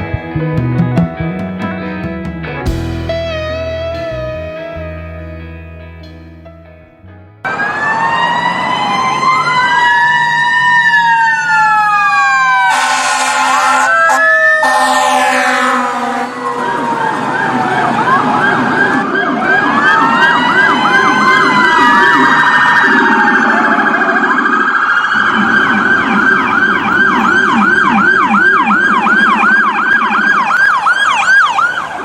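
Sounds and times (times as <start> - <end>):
low siren warble: 7.4 - 32.0
siren wail: 7.4 - 32.0
siren yelp: 7.5 - 32.0.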